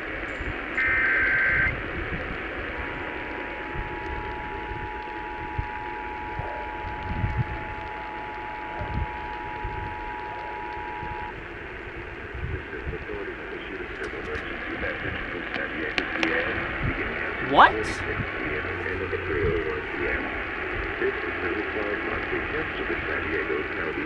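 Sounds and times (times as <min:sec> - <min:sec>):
digital data tones: 0:00.0 - 0:11.4
radio static hiss: 0:00.0 - 0:24.0
two-tone attention signal: 0:00.4 - 0:02.2, 0:02.8 - 0:11.4.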